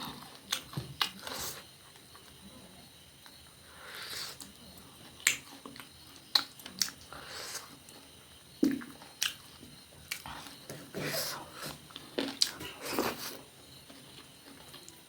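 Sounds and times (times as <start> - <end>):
soft breaths: 3.6 - 4.5
mouth clicks and lip smacks chewing: 8.6 - 9.4, 10.1 - 10.4.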